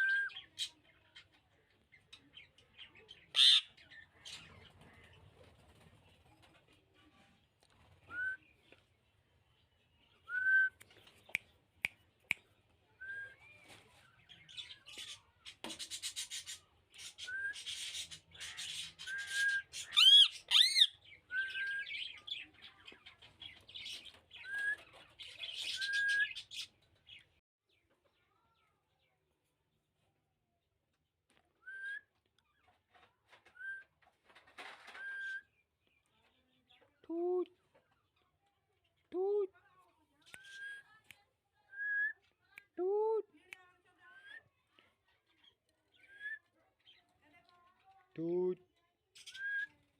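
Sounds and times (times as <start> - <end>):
parakeet harsh chattering: 3.4 - 3.7, 19.8 - 20.9.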